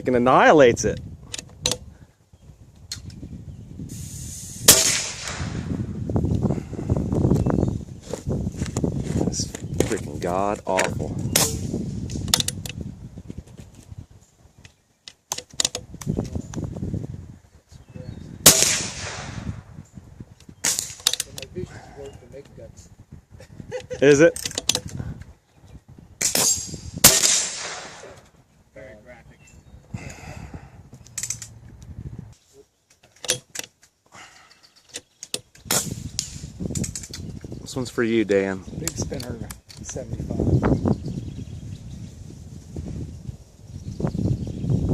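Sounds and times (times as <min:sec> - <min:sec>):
air rifle metallic clicks: 0:01.3 - 0:01.8, 0:12.1 - 0:12.8, 0:14.6 - 0:16.6, 0:20.4 - 0:21.5, 0:24.4 - 0:25.0, 0:31.0 - 0:31.9, 0:32.9 - 0:37.3
air rifle shot: 0:04.0 - 0:05.9, 0:11.3 - 0:11.7, 0:18.4 - 0:19.6, 0:26.2 - 0:28.2.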